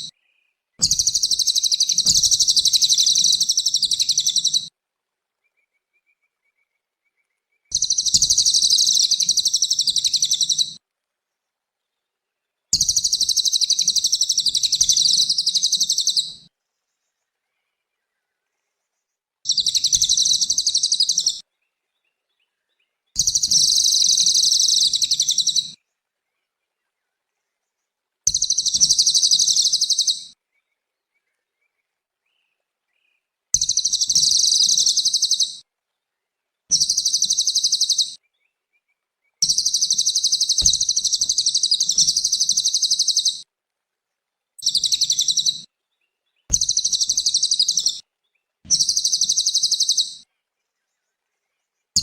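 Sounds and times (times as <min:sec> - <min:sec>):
songbird trilling: 0:00.8 - 0:04.7, 0:07.7 - 0:10.8, 0:12.8 - 0:16.4, 0:19.5 - 0:21.4, 0:23.2 - 0:25.8, 0:28.3 - 0:30.3, 0:33.6 - 0:35.6, 0:36.7 - 0:38.2, 0:39.4 - 0:43.4, 0:44.6 - 0:45.7, 0:46.5 - 0:48.0, 0:48.7 - 0:50.2.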